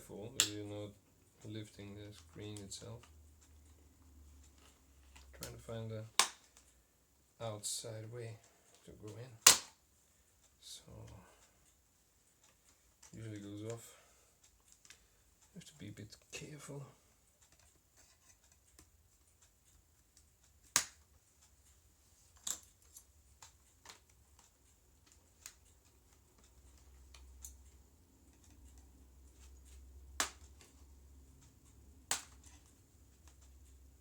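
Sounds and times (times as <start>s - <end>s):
plastic clips snapping: 6.2s - 6.6s, 9.4s - 9.7s, 20.7s - 21.0s, 30.2s - 30.7s, 32.1s - 32.6s.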